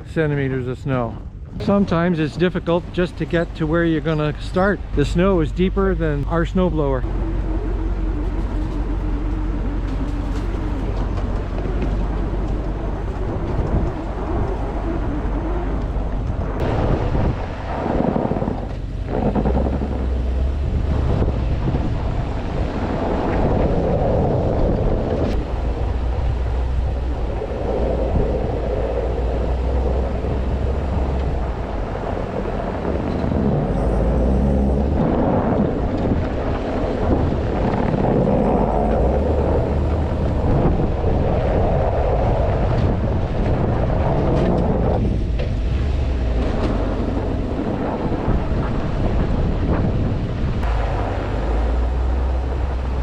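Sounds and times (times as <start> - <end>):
snow clearing engine droning: 0.0 - 49.4, 50.6 - 53.0
wind noise on microphone: 0.0 - 53.0.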